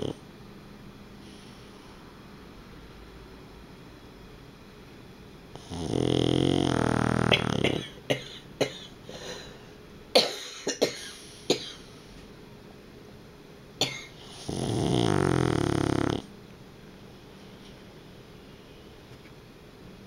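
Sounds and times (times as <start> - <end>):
dog snoring: 0.0 - 0.2, 5.5 - 8.0, 14.2 - 16.3
dog snorting: 0.0 - 0.2, 5.6 - 8.0, 14.2 - 16.3.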